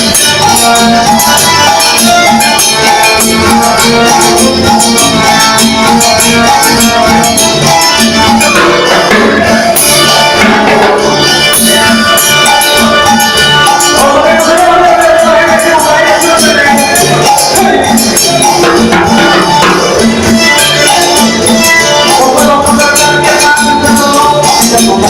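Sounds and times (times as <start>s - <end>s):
latin dance music on keyboard: 0.0s - 25.0s.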